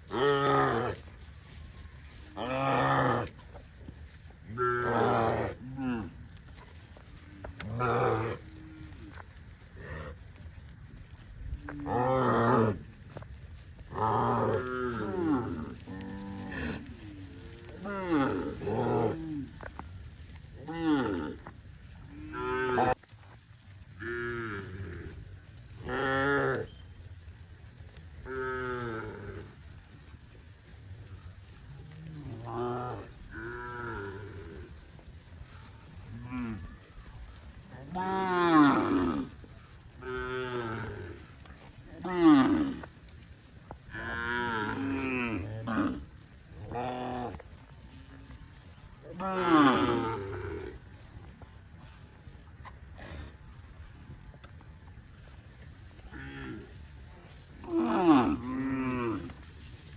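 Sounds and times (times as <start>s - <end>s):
cows mooing: 0.0s - 1.0s, 2.4s - 3.4s, 4.5s - 6.2s, 7.1s - 10.2s, 11.6s - 12.9s, 13.8s - 19.8s, 20.6s - 23.0s, 24.0s - 26.8s, 28.2s - 29.6s, 31.7s - 34.8s, 37.8s - 42.9s, 43.9s - 50.8s, 56.0s - 59.5s.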